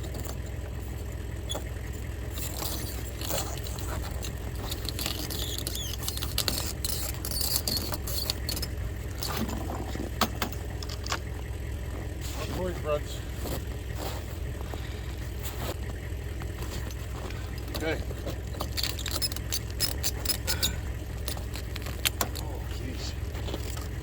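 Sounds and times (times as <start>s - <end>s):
engine idling: 0.0s - 24.0s
frozen hose clicks and knocks: 2.4s - 11.4s, 16.4s - 24.0s.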